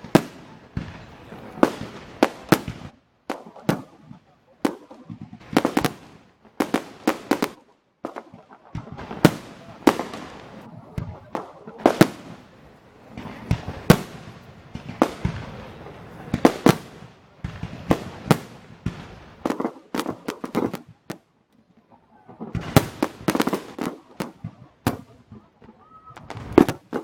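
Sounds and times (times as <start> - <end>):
fireworks bursting with echo: 0.0 - 27.0.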